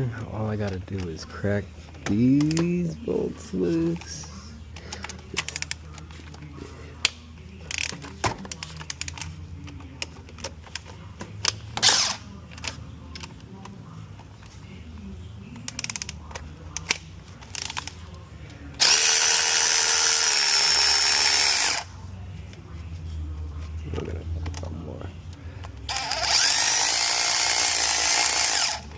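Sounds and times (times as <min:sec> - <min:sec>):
power tool whining: 0:18.8 - 0:21.9, 0:25.9 - 0:28.9.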